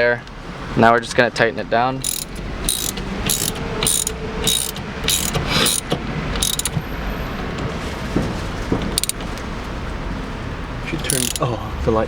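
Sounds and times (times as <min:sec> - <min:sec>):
ratchet wrench clicking: 0:02.0 - 0:06.8, 0:09.0 - 0:09.2, 0:11.1 - 0:11.5.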